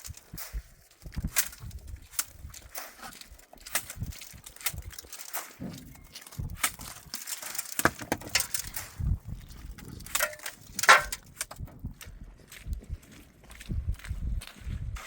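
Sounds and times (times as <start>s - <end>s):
footsteps crunching on snow: 11.8s - 15.0s.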